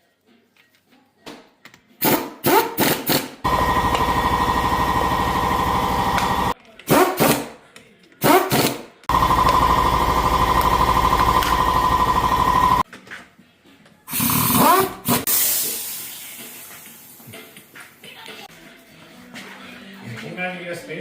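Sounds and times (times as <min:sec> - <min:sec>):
impact wrench hammering: 0:02.0 - 0:07.5, 0:08.2 - 0:12.8.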